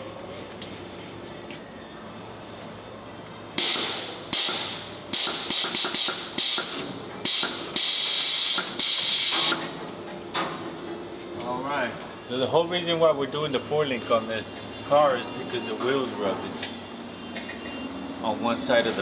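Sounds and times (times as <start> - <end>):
pneumatic tool hissing bursts: 3.6 - 9.7.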